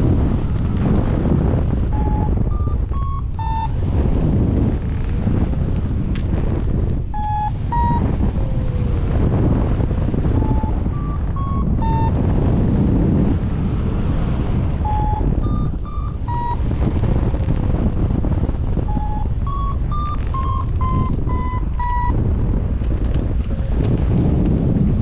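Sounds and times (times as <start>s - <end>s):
wind noise on microphone: 0.0s - 25.0s
variometer beeping: 1.8s - 4.2s, 7.1s - 8.4s, 10.2s - 12.4s, 14.8s - 17.0s, 18.8s - 22.2s.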